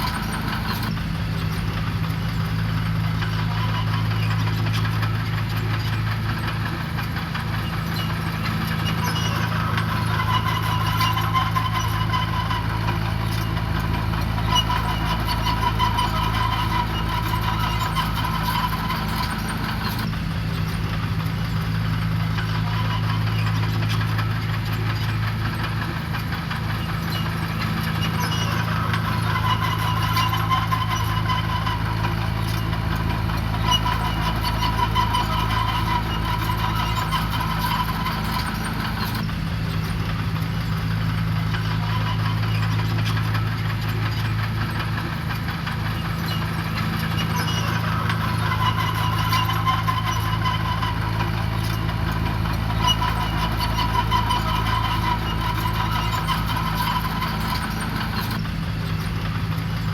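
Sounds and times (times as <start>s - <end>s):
diesel engine running: 0.0s - 59.9s
high engine whine: 0.0s - 59.9s.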